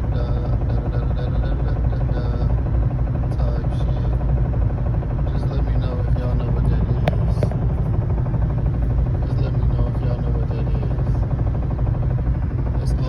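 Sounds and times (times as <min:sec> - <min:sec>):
car engine low rumble: 0:00.0 - 0:13.0.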